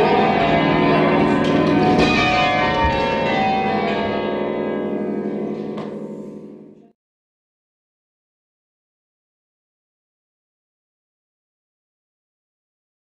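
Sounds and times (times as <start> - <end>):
tower bells ringing: 0.0 - 7.0.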